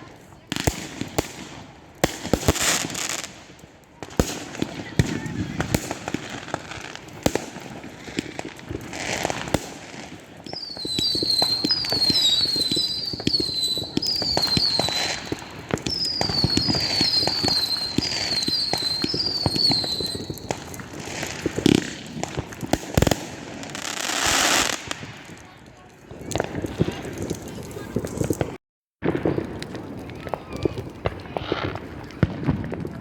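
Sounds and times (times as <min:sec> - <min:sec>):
firework crackling and popping: 0:00.0 - 0:33.0
loud firework bangs: 0:00.4 - 0:25.5
firework whistles falling in pitch: 0:15.9 - 0:20.4.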